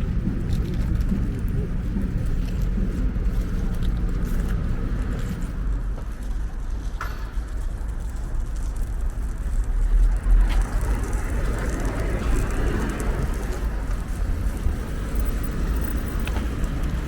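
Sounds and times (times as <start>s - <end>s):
car rumbling on the move: 7.8s - 17.0s.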